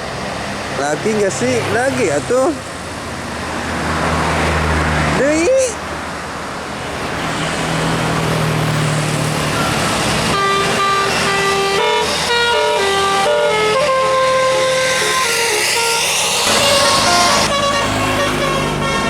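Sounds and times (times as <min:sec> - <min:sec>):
bus engine hum: 0:00.0 - 0:19.0
road noise: 0:00.0 - 0:19.0
musical air horn tune: 0:10.2 - 0:19.0.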